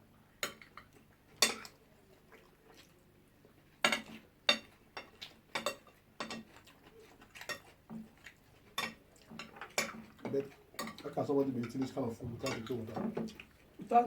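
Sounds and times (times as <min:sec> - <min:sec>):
cutlery clinking on plates: 0:00.4 - 0:01.8, 0:03.8 - 0:13.5.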